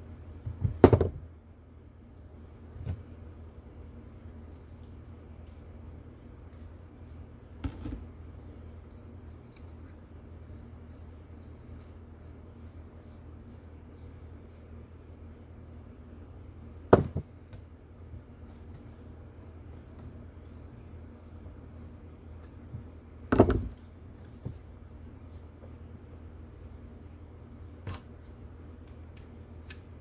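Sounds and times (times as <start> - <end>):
steady low hum: 0.0 - 30.0
small parts knocking on a workbench: 0.5 - 1.2, 7.6 - 8.1, 16.9 - 17.3, 23.3 - 23.8.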